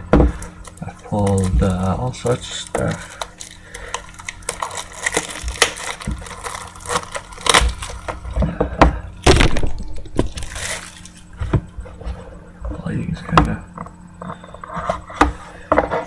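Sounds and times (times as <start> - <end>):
plastic wrap crinkling and tearing: 0.5 - 8.3, 9.2 - 11.4.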